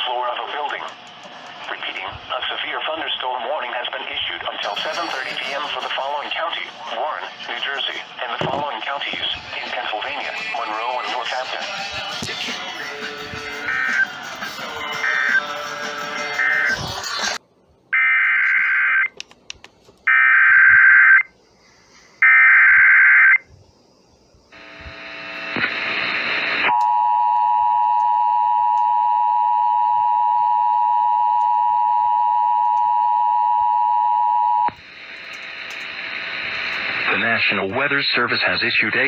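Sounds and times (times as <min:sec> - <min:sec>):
warbling digital data tones: 0:04.6 - 0:06.7
steady electronic attention tone: 0:04.6 - 0:07.2.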